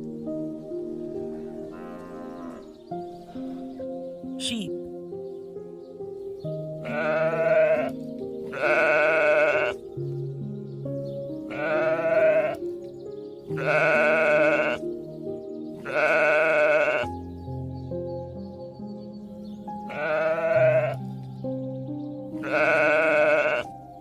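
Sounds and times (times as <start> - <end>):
background music with held notes: 0.0 - 24.0
wavering farm animal calls: 1.1 - 3.8, 6.8 - 10.0, 11.4 - 12.8, 13.4 - 17.2, 19.8 - 21.1, 22.3 - 23.7.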